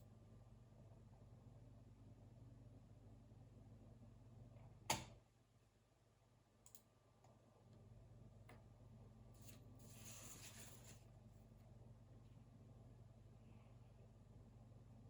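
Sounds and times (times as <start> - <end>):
low steady hum: 0.0 - 15.0
faint clicks: 6.6 - 7.4
soft brushing rustle: 9.4 - 11.2.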